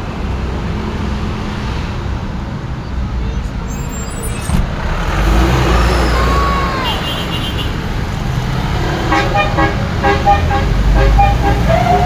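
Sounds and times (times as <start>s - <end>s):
bus engine and road noise: 0.0s - 12.0s
multi-tone horn playing a tune: 9.0s - 12.0s.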